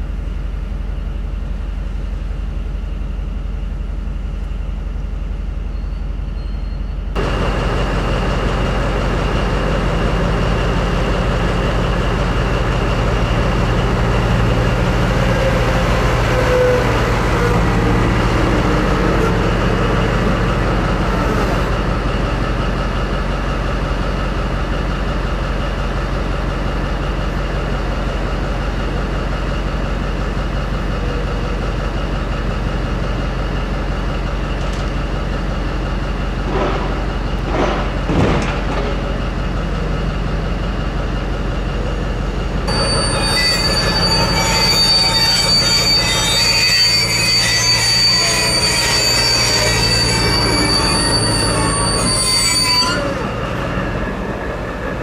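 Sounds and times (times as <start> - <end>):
low engine drone: 0.0 - 45.9
train brake and wheel squeal: 5.6 - 7.2, 12.9 - 22.8, 42.7 - 54.8.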